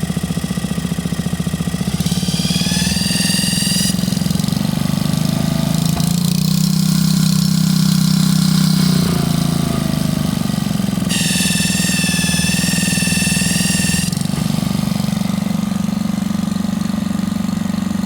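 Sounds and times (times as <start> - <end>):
small engine running: 0.0 - 18.0
high-pitched whine: 1.8 - 4.8, 11.1 - 15.2.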